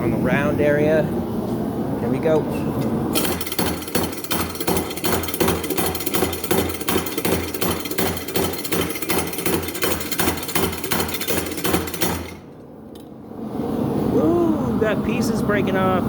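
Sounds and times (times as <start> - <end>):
power hammer pounding steel: 3.1 - 12.5.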